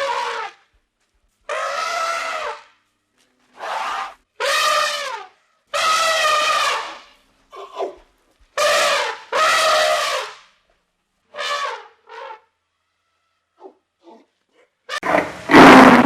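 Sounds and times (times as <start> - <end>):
animal calling with brassy calls: 0.0 - 0.7, 1.4 - 2.8, 3.5 - 8.0, 8.6 - 10.4, 11.3 - 14.2.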